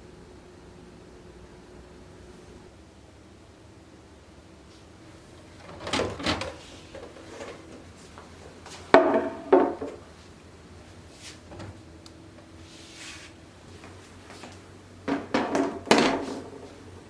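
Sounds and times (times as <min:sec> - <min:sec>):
knocks and scrapes of objects: 0:08.9 - 0:10.0, 0:15.1 - 0:16.8.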